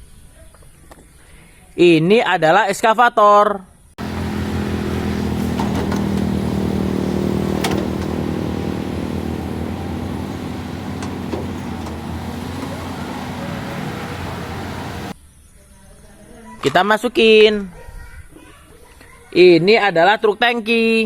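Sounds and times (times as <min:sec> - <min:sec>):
excavator engine running: 0:04.0 - 0:15.1.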